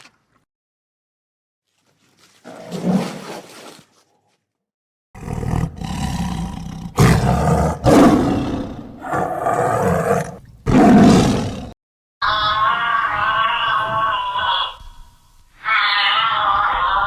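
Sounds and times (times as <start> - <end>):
tiger roaring: 5.2 - 11.8.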